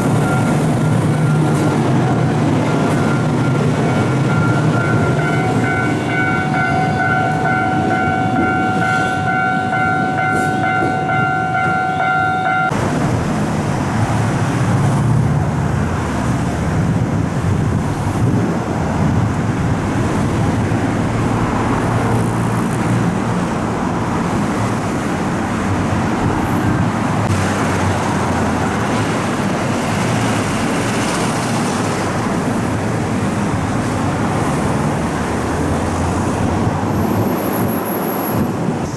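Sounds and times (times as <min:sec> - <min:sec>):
level-crossing alarm tone: 0:00.0 - 0:12.8
passing train rumble: 0:00.0 - 0:38.9
road traffic rumble: 0:00.0 - 0:38.9.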